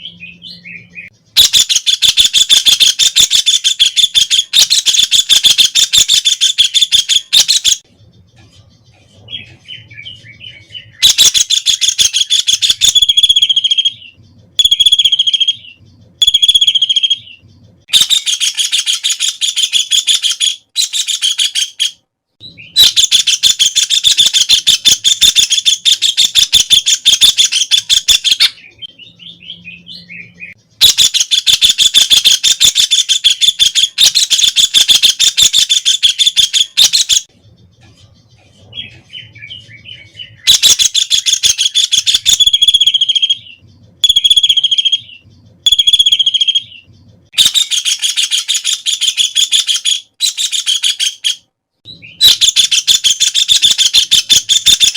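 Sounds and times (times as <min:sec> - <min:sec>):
bird chatter: 0:00.0 - 0:54.9.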